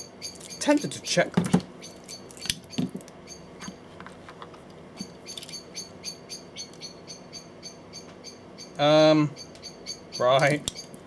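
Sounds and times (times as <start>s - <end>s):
songbird chirping: 0.0s - 1.0s, 5.0s - 11.0s.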